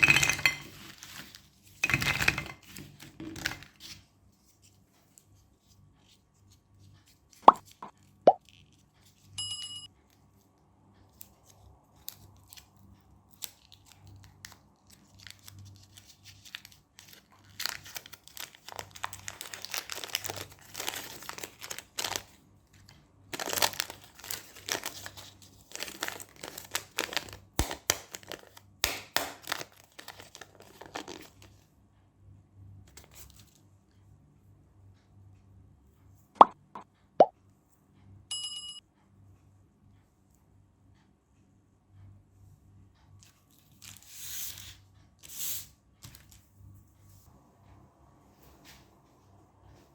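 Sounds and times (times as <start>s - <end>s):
candy wrappers crinkling: 13.3s - 31.6s.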